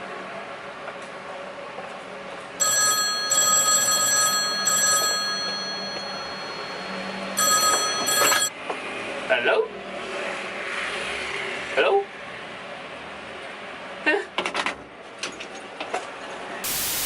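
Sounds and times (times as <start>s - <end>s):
bright metallic bell ringing: 2.6s - 8.5s.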